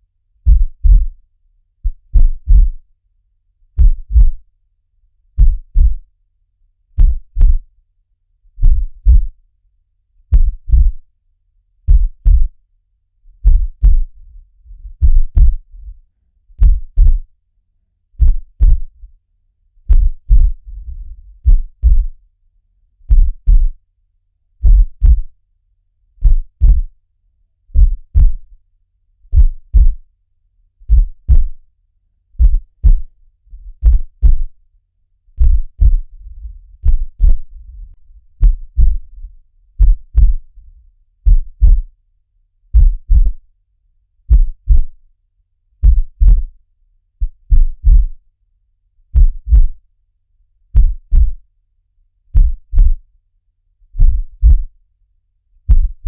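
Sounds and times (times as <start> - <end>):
heartbeat thumps: 0.5 - 1.2, 1.8 - 2.8, 3.8 - 4.4, 5.4 - 6.0, 7.0 - 7.6, 8.6 - 9.4, 10.3 - 11.0, 11.9 - 12.6, 13.4 - 16.0, 16.6 - 17.3, 18.2 - 19.0, 19.9 - 22.2, 23.1 - 23.8, 24.6 - 25.4, 26.2 - 26.9, 27.8 - 28.5, 29.3 - 30.0, 30.8 - 31.6, 32.4 - 34.6, 35.4 - 40.6, 41.2 - 41.9, 42.7 - 43.5, 44.3 - 45.0, 45.8 - 46.5, 47.2 - 48.2, 49.1 - 49.8, 50.8 - 51.4, 52.4 - 53.0, 54.0 - 54.7, 55.7 - 56.0.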